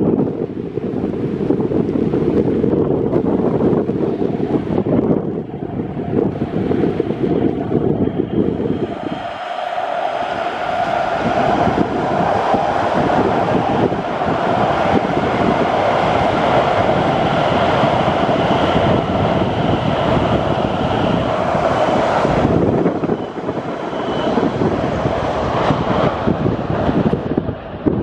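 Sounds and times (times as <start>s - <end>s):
train rushing past: 0.0s - 28.0s.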